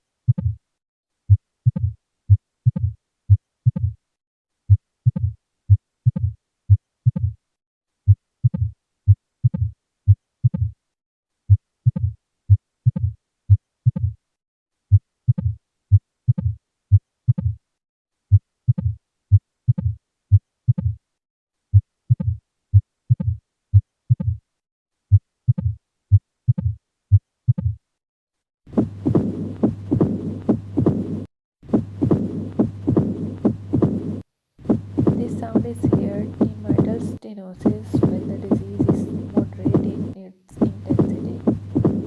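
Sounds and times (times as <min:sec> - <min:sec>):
low heartbeats: 0:00.3 - 0:00.6, 0:01.3 - 0:04.0, 0:04.7 - 0:07.4, 0:08.1 - 0:08.8, 0:09.4 - 0:10.8, 0:11.5 - 0:14.2, 0:14.9 - 0:16.6, 0:17.3 - 0:17.6, 0:18.3 - 0:19.0, 0:19.7 - 0:21.0, 0:21.7 - 0:24.4, 0:25.1 - 0:26.8, 0:27.5 - 0:27.8, 0:28.7 - 0:42.0
rumbling heart murmur: 0:28.7 - 0:42.0.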